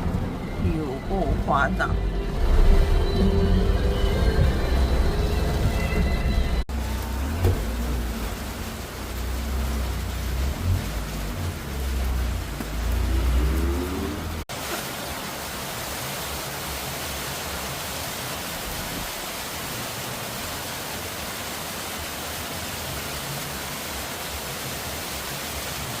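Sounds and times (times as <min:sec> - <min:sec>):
low rumble: 0:00.0 - 0:14.4
heavy rain downpour: 0:00.0 - 0:26.0.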